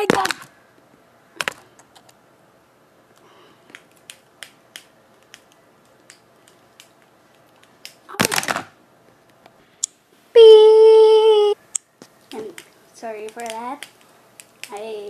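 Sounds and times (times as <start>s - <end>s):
light irregular taps: 12.0s - 14.9s.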